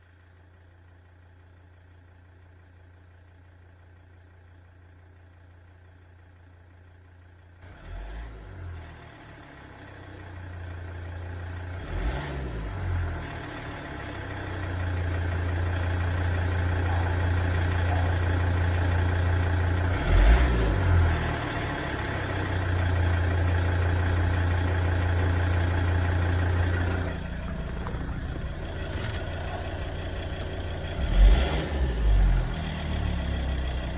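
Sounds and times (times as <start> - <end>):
car engine idling with knock: 12.8 - 33.9.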